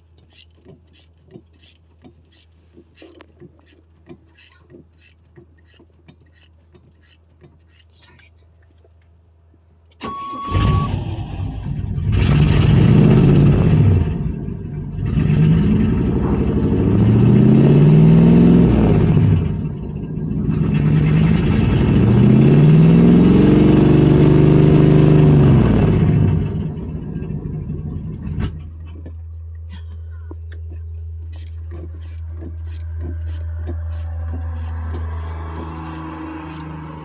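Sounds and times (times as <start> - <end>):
car engine revving: 10.5 - 29.7, 30.5 - 37.0.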